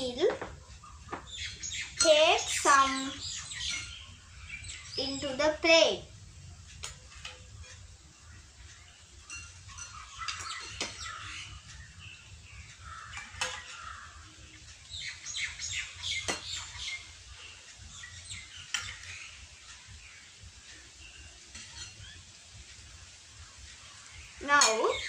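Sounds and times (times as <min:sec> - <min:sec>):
birds chirping: 0:00.0 - 0:25.0
spoon clinking against a bowl: 0:09.2 - 0:11.0, 0:21.5 - 0:22.1.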